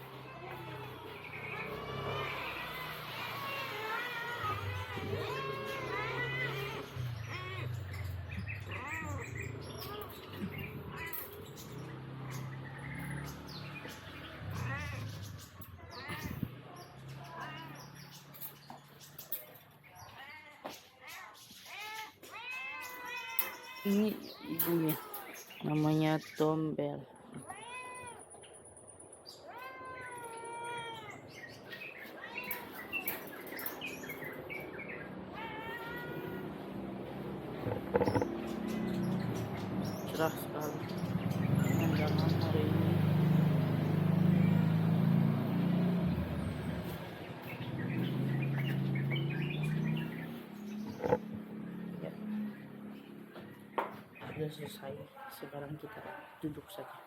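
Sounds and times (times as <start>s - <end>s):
cats meowing: 0.0s - 25.8s, 27.2s - 28.5s, 29.2s - 44.0s, 46.1s - 51.4s
cat meowing: 0.1s - 11.4s, 14.3s - 15.2s, 21.7s - 25.4s, 27.3s - 28.3s, 29.4s - 33.3s, 35.3s - 36.6s
cat chirping calls: 21.1s - 25.6s, 27.2s - 28.6s, 29.2s - 40.2s.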